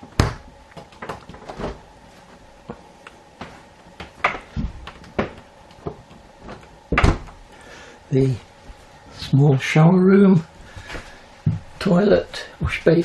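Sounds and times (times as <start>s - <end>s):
cupboard doors clicking and knocking: 4.1s - 7.4s.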